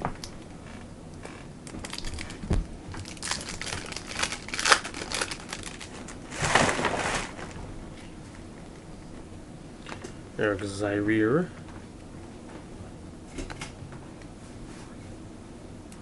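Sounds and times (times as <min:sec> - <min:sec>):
card pack wrapper crinkling and tearing: 0:01.7 - 0:07.3.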